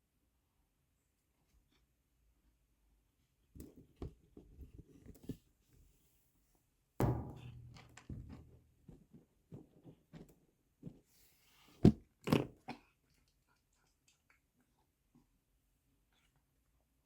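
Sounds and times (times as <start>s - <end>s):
sharp knocks: 7.0s - 8.5s
cat eating food: 12.1s - 16.5s.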